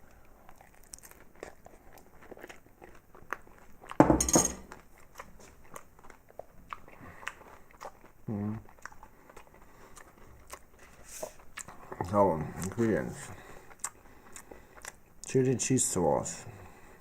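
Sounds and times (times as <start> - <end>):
chewing: 0.0 - 4.0, 4.7 - 15.4
cutlery clicking on a tray: 4.1 - 4.6
person humming: 8.3 - 8.6.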